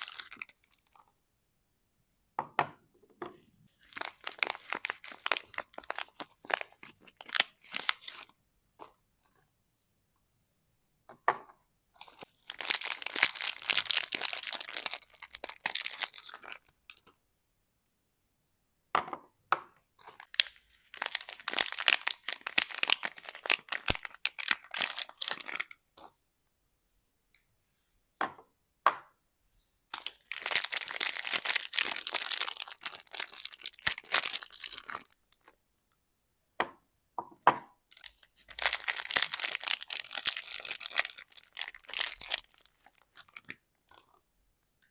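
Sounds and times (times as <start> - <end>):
wrappers tearing and crinkling: 0.0 - 0.6, 3.8 - 8.3, 12.0 - 16.6, 20.2 - 25.7, 30.0 - 35.2, 37.9 - 43.5.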